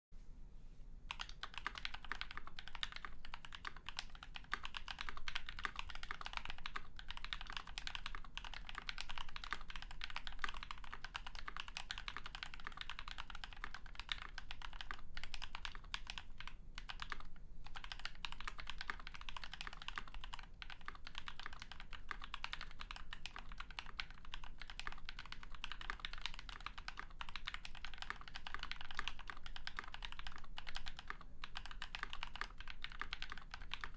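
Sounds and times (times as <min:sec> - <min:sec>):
fast mechanical keyboard typing: 0:01.1 - 0:33.9.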